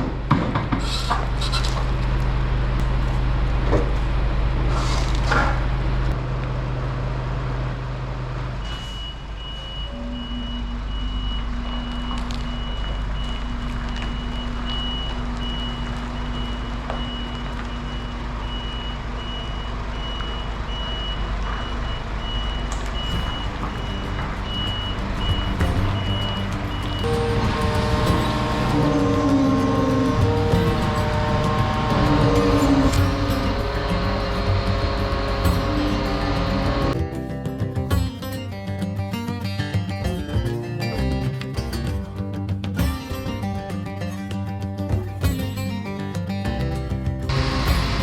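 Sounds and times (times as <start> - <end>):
lorry engine running: 0.0 - 8.8, 21.4 - 37.9, 47.3 - 48.0
reversing alarm beeping: 8.6 - 37.0.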